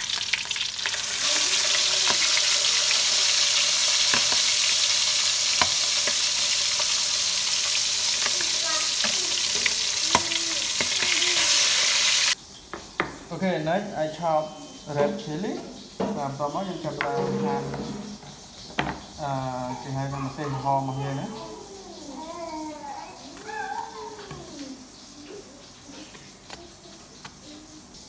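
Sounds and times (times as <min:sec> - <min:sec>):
meat sizzling in oil: 0:00.0 - 0:12.4.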